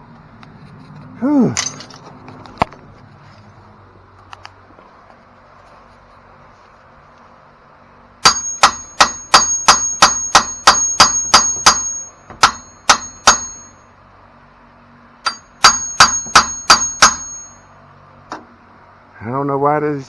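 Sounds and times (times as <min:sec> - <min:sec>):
hammer blows on steel: 0:08.2 - 0:13.8, 0:15.2 - 0:17.7.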